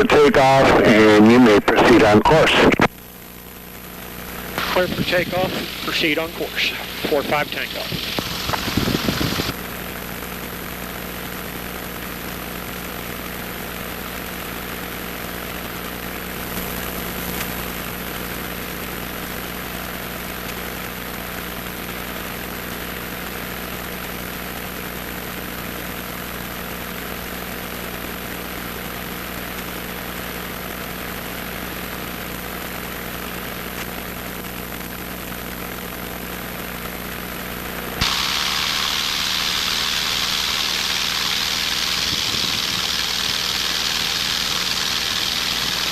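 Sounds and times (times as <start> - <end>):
light aircraft engine and propeller: 38.0 - 45.9.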